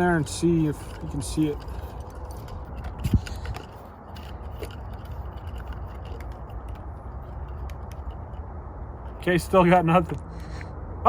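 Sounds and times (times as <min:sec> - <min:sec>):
flashlight clicks and scrapes: 0:00.0 - 0:08.4.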